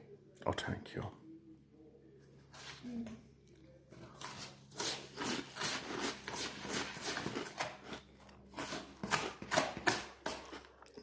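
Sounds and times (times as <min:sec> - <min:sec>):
rhythmic crunching of puffed rice: 0:03.9 - 0:11.0.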